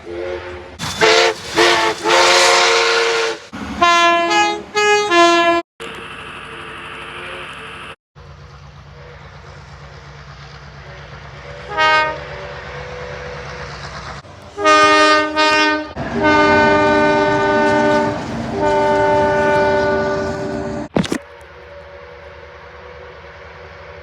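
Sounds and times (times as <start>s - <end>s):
train air horn blasts: 0.0s - 5.6s, 11.4s - 13.6s, 14.5s - 24.0s
low rumble of train: 0.0s - 24.0s.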